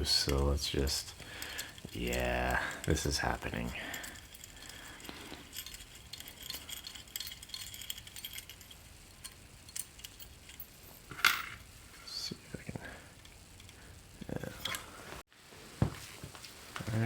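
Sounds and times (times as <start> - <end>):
hand tools clinking: 0.0 - 11.7, 13.2 - 15.2
tools clattering: 0.0 - 11.7.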